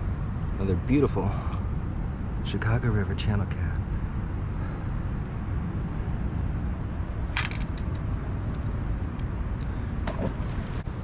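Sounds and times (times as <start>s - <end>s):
low outdoor rumble: 0.0s - 11.0s.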